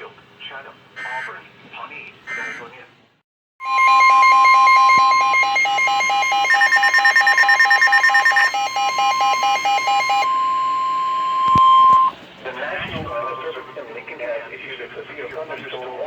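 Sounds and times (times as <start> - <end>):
rapid electronic alarm beeping: 3.6 - 12.2
steady single-pitch alarm tone: 3.6 - 12.2.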